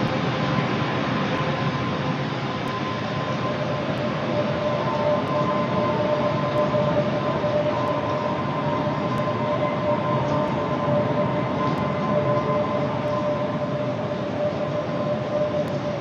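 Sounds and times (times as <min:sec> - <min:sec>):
rushing drone with held tones: 0:00.0 - 0:16.0.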